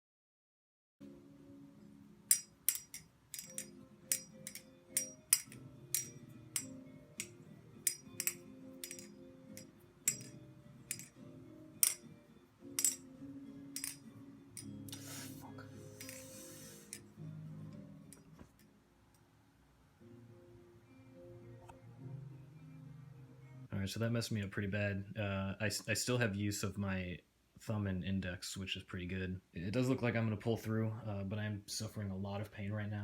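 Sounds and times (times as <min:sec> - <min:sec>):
background music: 0:01.0 - 0:24.4.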